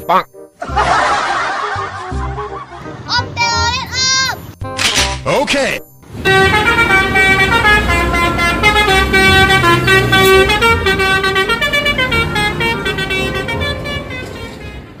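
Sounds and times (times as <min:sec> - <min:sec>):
multi-tone bus horn melody: 0:06.0 - 0:15.0.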